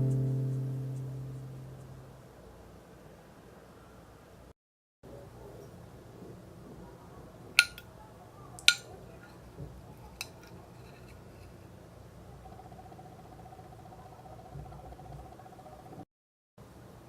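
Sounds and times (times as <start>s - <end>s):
faint background hiss: 0.0s - 4.5s, 16.6s - 17.0s.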